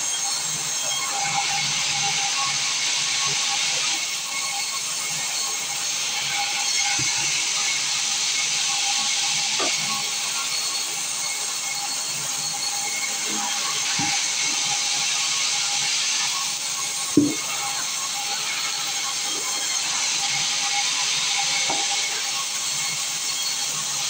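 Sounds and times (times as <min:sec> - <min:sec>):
sawmill machinery humming: 0:00.1 - 0:24.0
wood knocking: 0:17.2 - 0:17.4.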